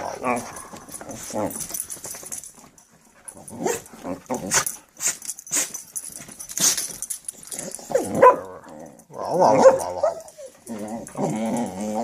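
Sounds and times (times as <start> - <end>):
dog whining barks: 3.6 - 3.9, 7.5 - 10.5.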